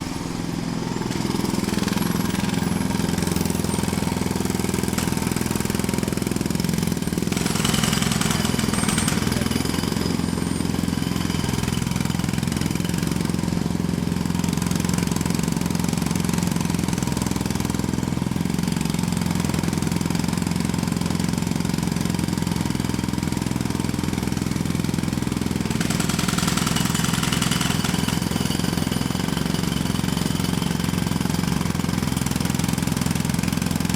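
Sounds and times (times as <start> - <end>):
steady engine drone: 0.0 - 19.2
jackhammer hammering: 0.0 - 33.9.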